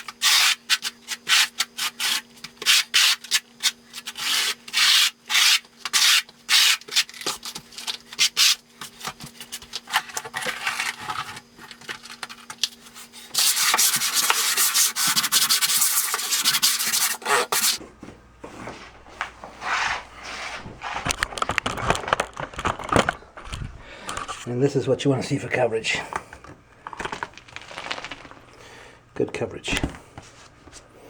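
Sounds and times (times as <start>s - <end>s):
handling sounds: 17.6s - 24.5s, 25.2s - 30.9s.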